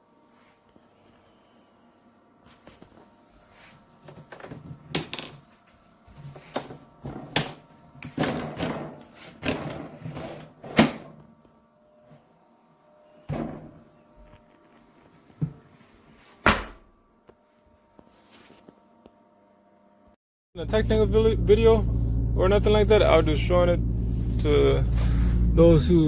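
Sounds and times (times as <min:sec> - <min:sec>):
faint steady hum: 0:00.0 - 0:16.3
clunks and knocks from handling: 0:06.2 - 0:11.2, 0:13.3 - 0:13.8.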